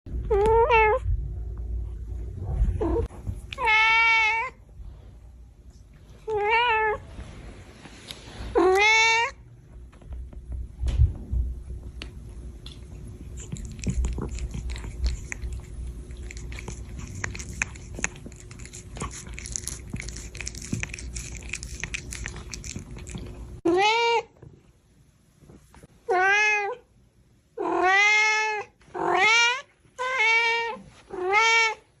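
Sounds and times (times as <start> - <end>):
cat meowing: 2.9 - 4.6
irregular crackling and clicking: 11.8 - 23.6.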